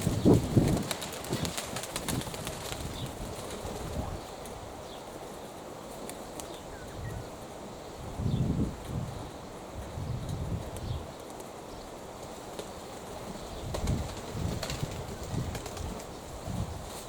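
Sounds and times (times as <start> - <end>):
wings flapping: 0.0 - 4.3, 5.9 - 6.6, 12.2 - 16.3
wind gusting over microphone: 0.0 - 5.0, 6.6 - 17.0.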